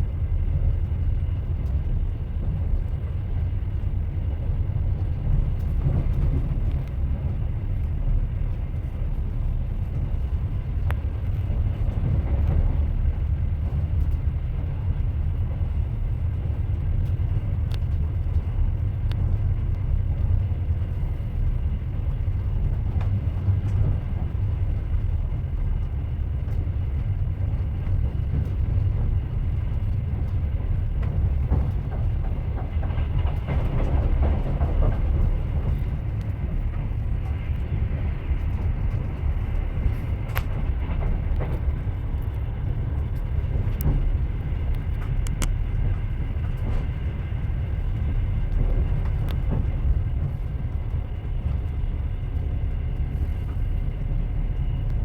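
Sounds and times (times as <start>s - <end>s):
train rumbling on rails: 0.0s - 55.0s
faint clicks: 38.4s - 50.9s.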